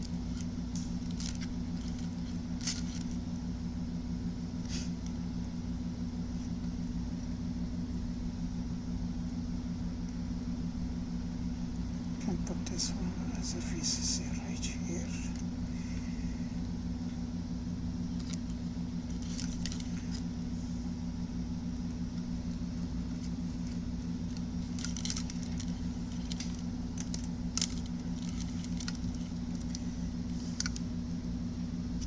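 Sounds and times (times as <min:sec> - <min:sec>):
clicks and rustles of small parts: 0:00.0 - 0:03.3, 0:18.1 - 0:20.3, 0:21.8 - 0:30.9
steady low hum: 0:00.0 - 0:32.0.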